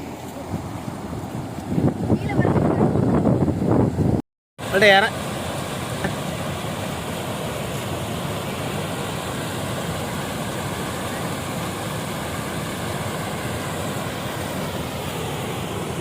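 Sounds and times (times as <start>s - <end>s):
rainwater runoff rushing: 4.6s - 16.0s.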